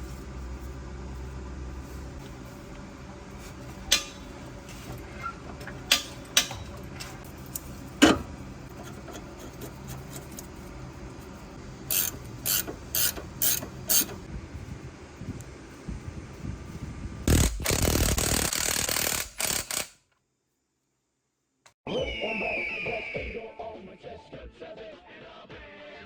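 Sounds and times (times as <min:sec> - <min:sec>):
metal clicks and knocks: 0:03.9 - 0:10.4
ratchet wrench clicking: 0:11.9 - 0:14.3, 0:17.3 - 0:20.0.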